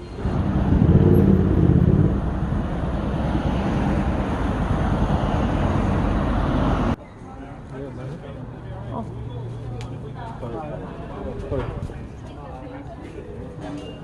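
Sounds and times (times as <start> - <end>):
road noise rumble: 0.0 - 12.4
vehicle engine running: 0.2 - 5.0.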